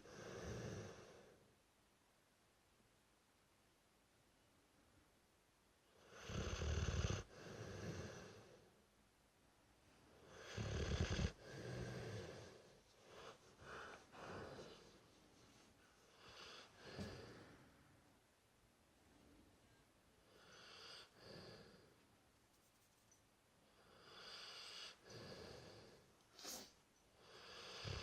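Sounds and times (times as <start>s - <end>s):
dog snoring: 0.0s - 1.3s, 6.0s - 8.5s, 10.3s - 14.8s, 23.8s - 26.6s, 27.2s - 28.0s.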